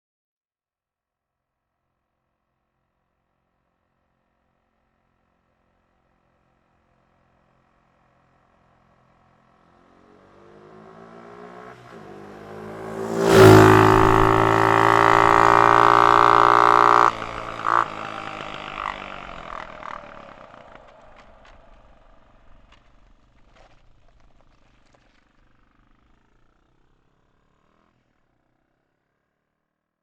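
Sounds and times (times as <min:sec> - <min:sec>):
quad bike engine driving by: 0:06.6 - 0:28.2.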